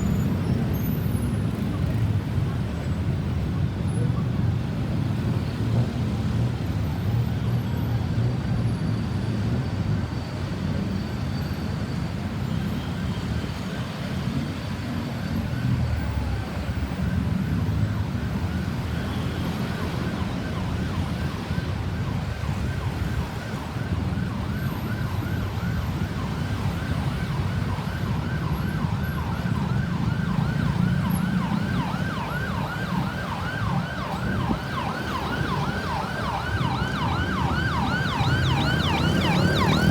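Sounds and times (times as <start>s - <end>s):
road traffic rumble: 0.0s - 39.9s
ambulance siren yelping: 18.0s - 39.9s.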